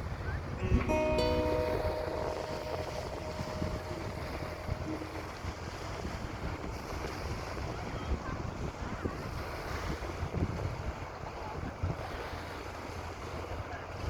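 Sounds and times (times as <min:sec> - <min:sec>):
wind buffeting microphone: 0:00.0 - 0:12.0
sea and ship noise: 0:00.0 - 0:14.0
lingering music note: 0:00.6 - 0:06.6.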